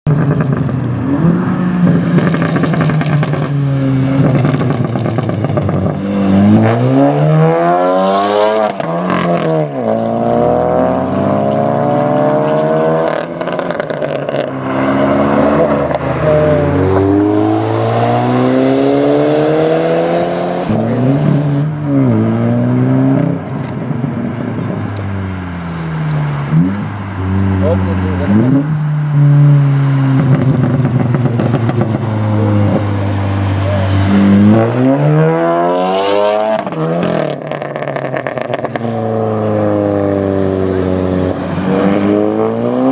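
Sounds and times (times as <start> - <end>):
car engine revving: 0.1 - 42.9
exhaust crackles: 15.6 - 35.1.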